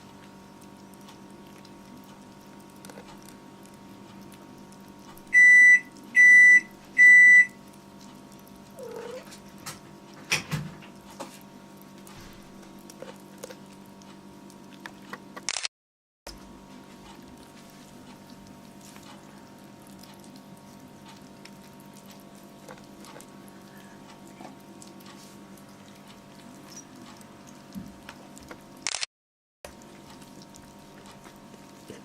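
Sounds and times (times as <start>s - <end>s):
kitten mewing: 8.8s - 9.4s.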